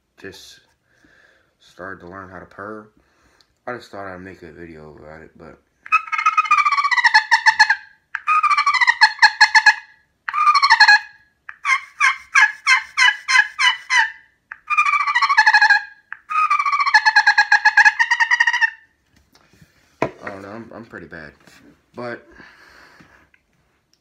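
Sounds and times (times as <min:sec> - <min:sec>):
slate turkey call purring: 0:05.9 - 0:18.8.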